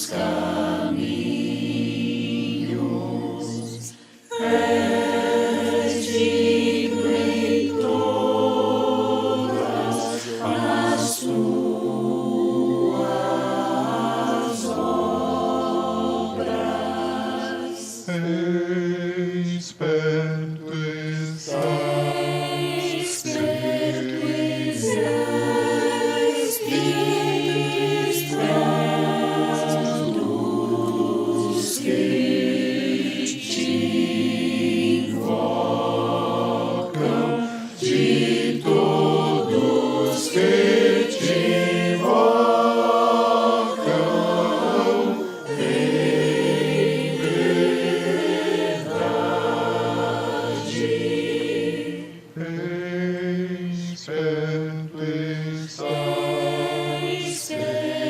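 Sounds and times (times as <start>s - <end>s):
choir singing a hymn: 0.0s - 58.0s
singers breathing: 3.9s - 4.3s, 37.3s - 37.8s.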